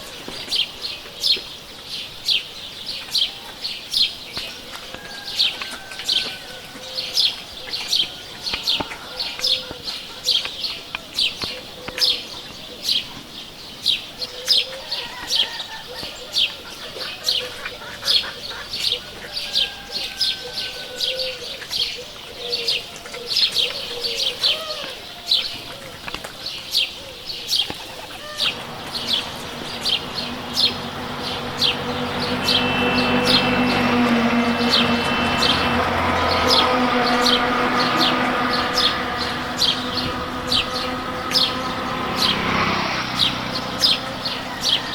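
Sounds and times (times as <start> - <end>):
small birds chirping: 0.0 - 44.9
steady low hum: 28.5 - 42.4.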